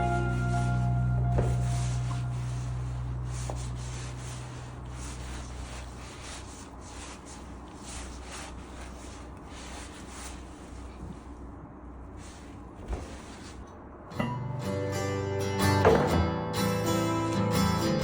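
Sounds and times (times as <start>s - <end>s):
background music: 0.0s - 3.4s, 14.2s - 18.0s
hands kneading dough: 0.0s - 13.7s.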